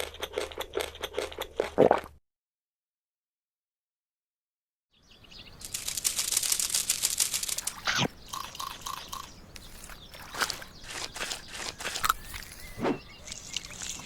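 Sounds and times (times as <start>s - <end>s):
crackling clicks: 5.6s - 12.6s.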